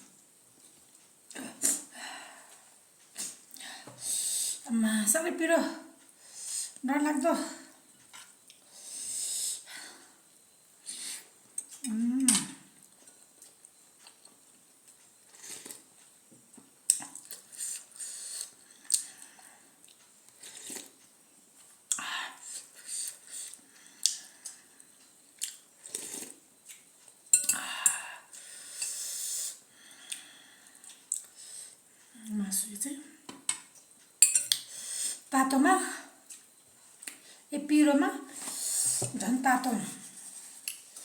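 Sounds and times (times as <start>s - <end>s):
chewing: 23.1s - 27.1s
cutlery clinking on bowls: 27.4s - 27.6s, 33.5s - 34.6s.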